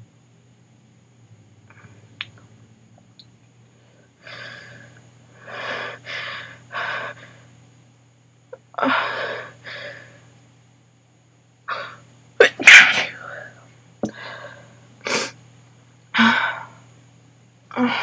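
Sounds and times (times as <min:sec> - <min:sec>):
woman gasping inhales: 0:14.1 - 0:15.3.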